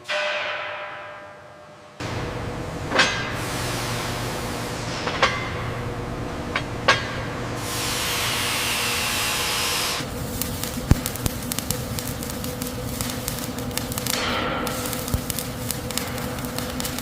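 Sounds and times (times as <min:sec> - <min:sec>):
steady machine hum: 0:01.6 - 0:17.0
hiss: 0:03.1 - 0:05.7, 0:07.6 - 0:17.0.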